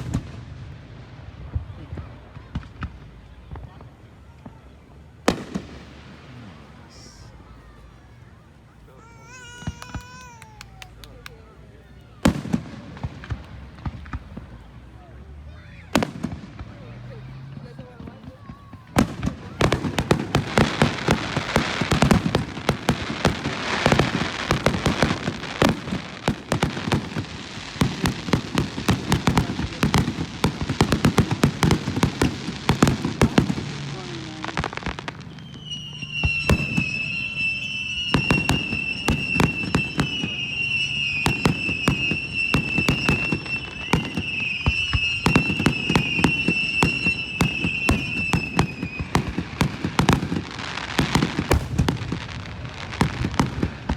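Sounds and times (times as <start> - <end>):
fireworks bangs and crackles: 0.0 - 53.9
steady high whistle: 35.3 - 49.1.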